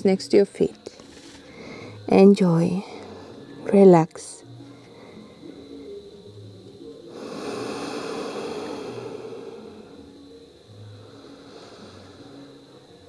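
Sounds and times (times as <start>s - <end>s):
soft background music: 0.0s - 13.0s
slow breath near microphone: 0.9s - 2.1s, 4.7s - 6.0s, 7.1s - 12.7s.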